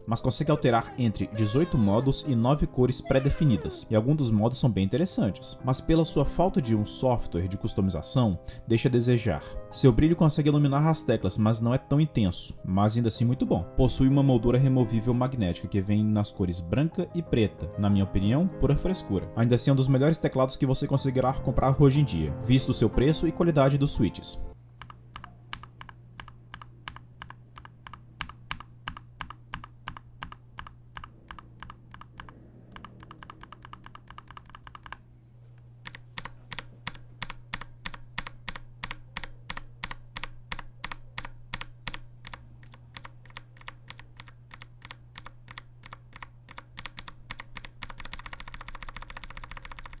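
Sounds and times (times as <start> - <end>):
mechanical keyboard typing: 24.8 - 35.1, 35.8 - 50.0.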